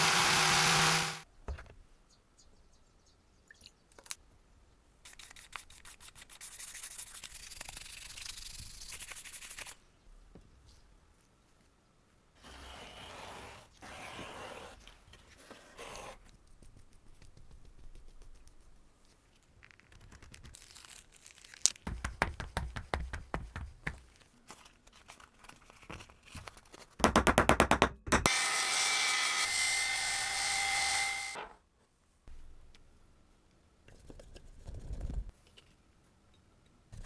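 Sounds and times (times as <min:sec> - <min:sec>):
power tool whining: 0:00.0 - 0:01.2, 0:28.3 - 0:31.4.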